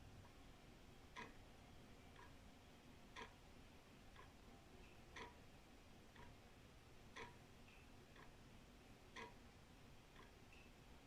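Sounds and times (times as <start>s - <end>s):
wall clock ticking: 1.1s - 1.5s, 2.1s - 2.4s, 3.1s - 3.5s, 4.1s - 10.8s.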